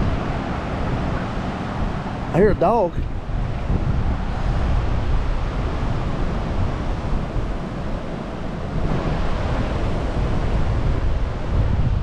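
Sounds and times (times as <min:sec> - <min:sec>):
rushing floodwater: 0:00.0 - 0:12.0
wind buffeting microphone: 0:00.0 - 0:12.0.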